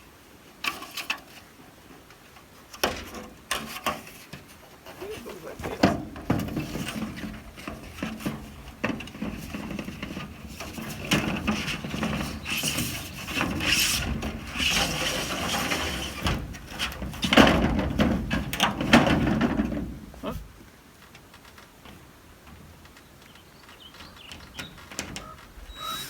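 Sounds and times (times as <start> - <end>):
roof panels knocking and scraping: 2.8 - 20.1.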